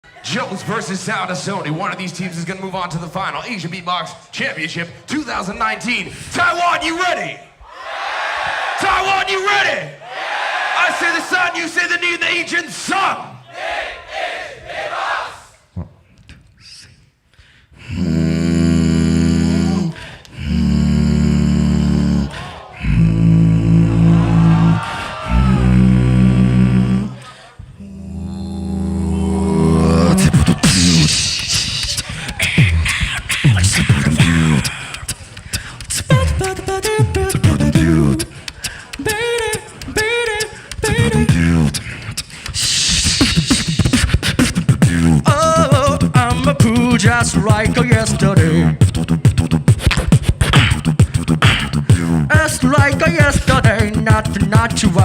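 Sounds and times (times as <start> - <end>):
beatbox vocal bass drone: 17.8 - 55.0
faint mouth sounds: 17.8 - 55.0.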